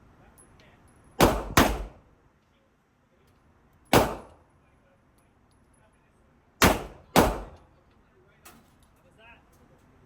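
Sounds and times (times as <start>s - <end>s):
revolver shots echoing indoors: 6.6s - 7.6s.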